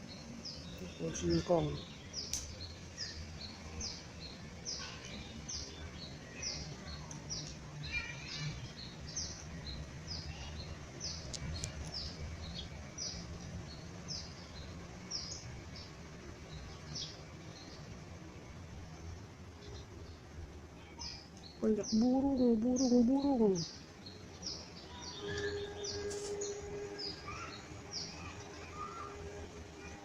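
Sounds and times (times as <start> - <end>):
low steady hum: 0.0 - 30.0
bird chirping: 21.0 - 29.2.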